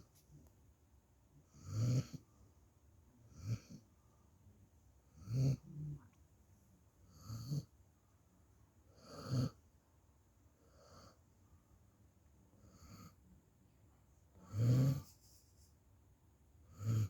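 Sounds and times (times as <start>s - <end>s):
puppy snoring: 1.4s - 2.3s, 3.2s - 3.9s, 5.1s - 6.1s, 7.0s - 7.8s, 8.9s - 9.6s, 12.6s - 13.2s, 14.4s - 15.4s, 16.6s - 17.0s.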